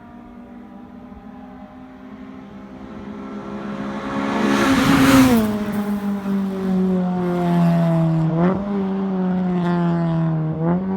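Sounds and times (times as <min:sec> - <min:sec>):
car engine revving high: 0:02.2 - 0:09.0.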